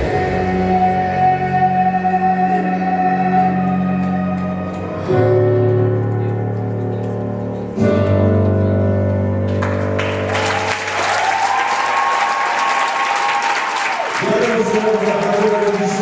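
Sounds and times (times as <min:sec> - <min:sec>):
audience applause: 0:09.5 - 0:16.0.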